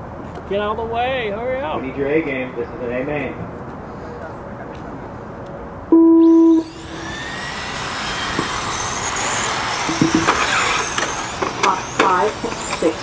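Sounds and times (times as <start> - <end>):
electronic start tone: 5.9 - 6.9
electric motors whining: 6.2 - 13.0.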